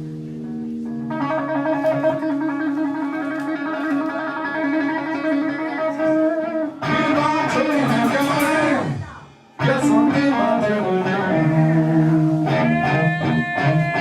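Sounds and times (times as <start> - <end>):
electric guitar solo: 0.0 - 14.0.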